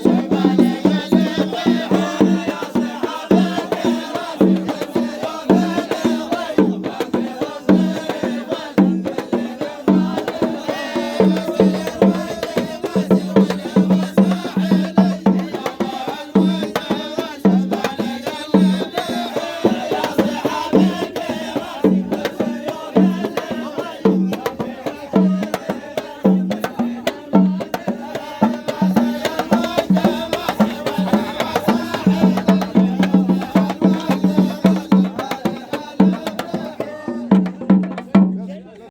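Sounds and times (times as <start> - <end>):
folk music with percussion: 0.0 - 38.9.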